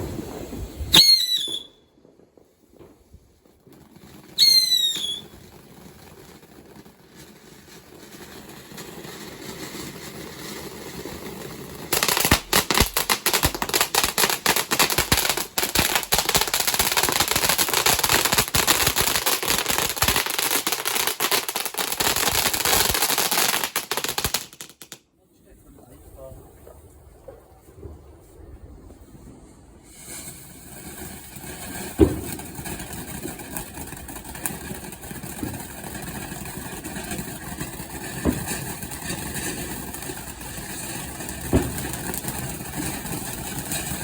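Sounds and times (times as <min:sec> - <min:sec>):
firework crackling bangs: 0:00.0 - 0:25.0, 0:29.8 - 0:44.0
firework falling whistle: 0:00.1 - 0:02.2, 0:03.8 - 0:05.6, 0:09.3 - 0:23.0, 0:29.8 - 0:44.0
faint hiss: 0:23.6 - 0:31.3.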